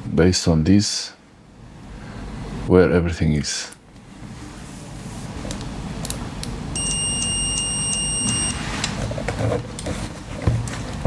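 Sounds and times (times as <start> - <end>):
high electronic beep: 6.8 - 8.6
handling and rubbing noise: 8.6 - 11.0.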